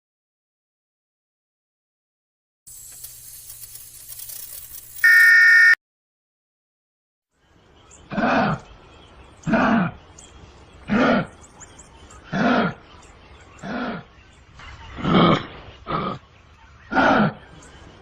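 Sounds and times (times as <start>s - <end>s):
kangaroo calling: 5.0s - 5.8s.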